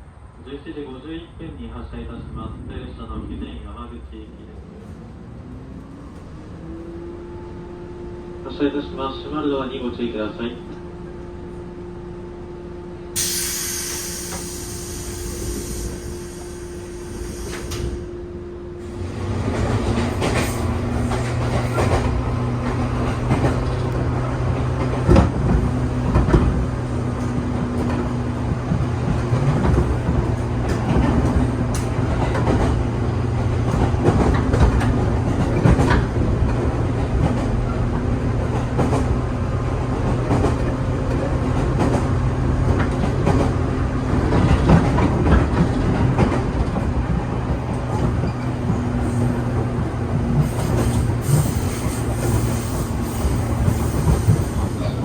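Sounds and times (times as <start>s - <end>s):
train motor hum: 4.6s - 55.0s
pneumatic doors hissing shut: 13.2s - 18.1s, 50.4s - 54.8s.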